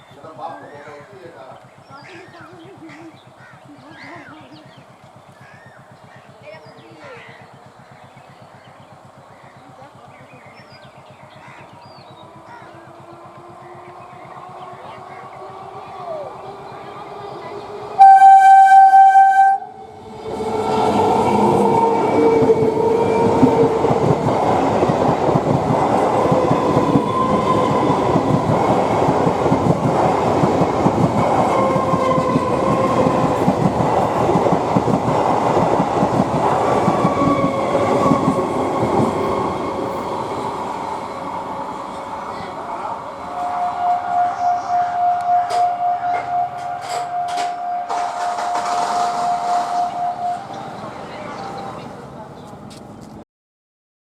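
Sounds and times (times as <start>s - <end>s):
train horn blast: 16.6s - 23.5s, 43.2s - 50.8s
train wheels clattering over rails: 19.4s - 43.7s, 44.4s - 53.2s.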